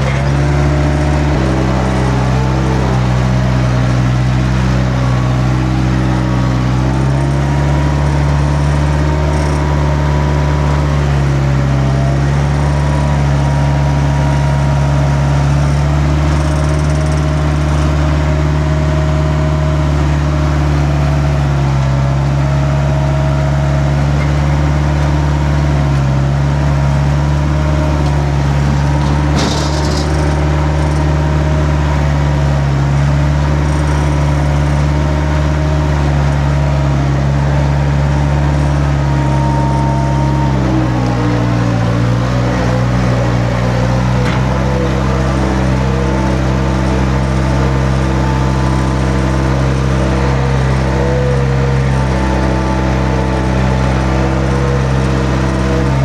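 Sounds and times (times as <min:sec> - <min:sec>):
vehicle engine running: 0:00.0 - 0:56.0.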